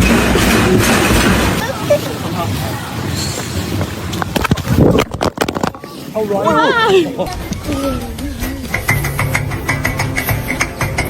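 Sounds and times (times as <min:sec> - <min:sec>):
fast beat music with pulsing bass: 0:07.3 - 0:11.0.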